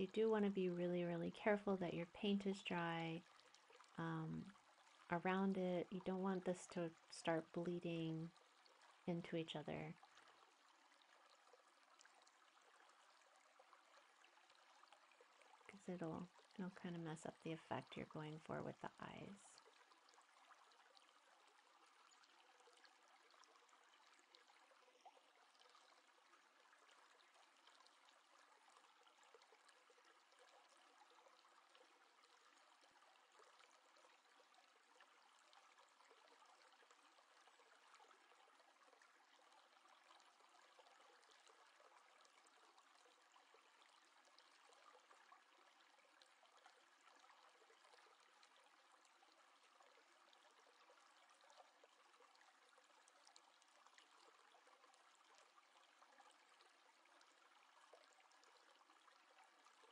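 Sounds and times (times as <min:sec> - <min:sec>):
faint steady hiss: 0:00.0 - 0:19.6.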